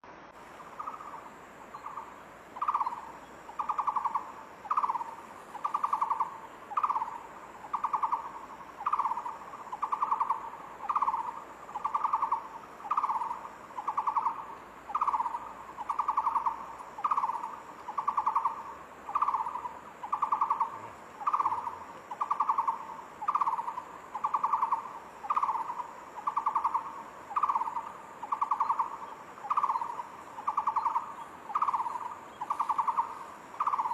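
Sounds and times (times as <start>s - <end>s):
barbet trilled hooting calls: 0.7s - 33.9s.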